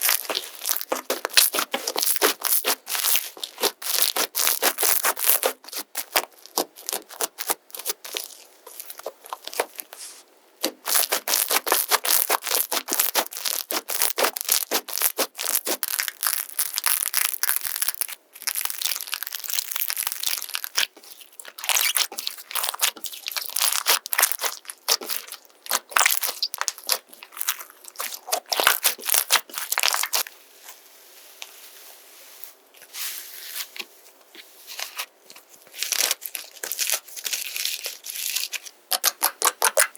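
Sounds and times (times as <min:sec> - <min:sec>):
slime crackling and popping: 0:00.0 - 0:10.0, 0:10.6 - 0:30.3, 0:35.7 - 0:39.9.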